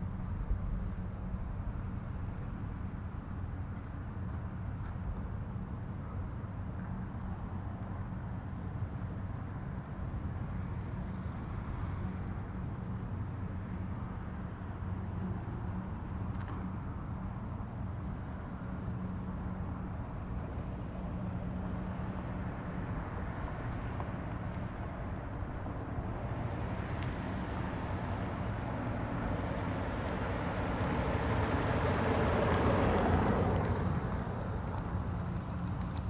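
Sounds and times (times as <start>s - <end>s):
distant highway traffic: 0.0s - 36.0s
vehicle passing: 21.8s - 36.0s.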